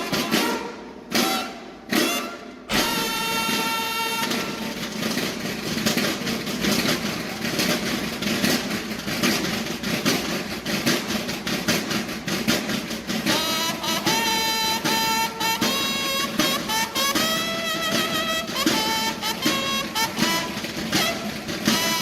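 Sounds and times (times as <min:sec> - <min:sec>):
bugle call: 0:00.0 - 0:04.9, 0:13.3 - 0:22.0
drums rolling: 0:00.0 - 0:22.0.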